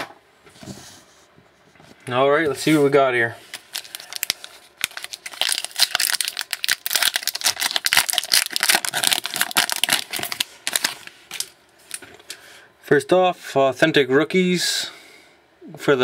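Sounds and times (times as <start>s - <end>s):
card pack wrapper tearing and crinkling: 3.5s - 12.0s.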